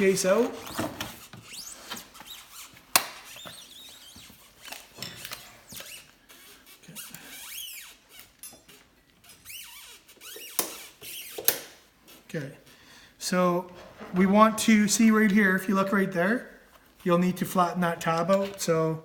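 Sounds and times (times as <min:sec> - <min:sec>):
parts rubbing with high squeaks: 0:00.0 - 0:12.3.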